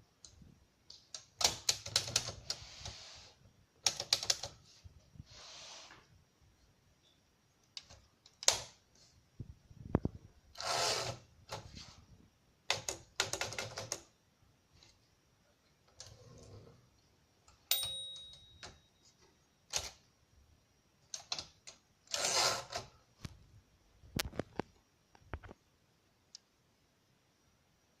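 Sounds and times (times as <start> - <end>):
typewriter carriage return rasp: 10.6 - 11.7, 22.1 - 23.0
typewriter bell ding: 17.7 - 19.0.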